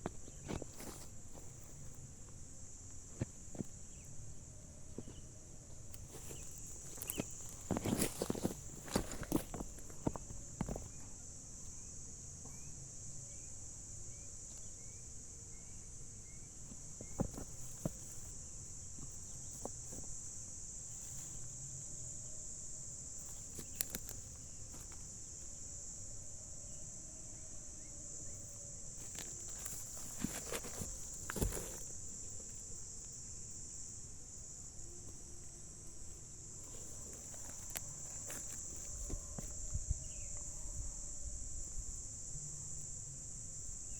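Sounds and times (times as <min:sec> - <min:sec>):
high-pitched insect chorus: 0:00.0 - 0:43.9
light clicks and rustles: 0:05.9 - 0:11.0, 0:23.2 - 0:25.5, 0:29.0 - 0:32.6, 0:36.6 - 0:39.7.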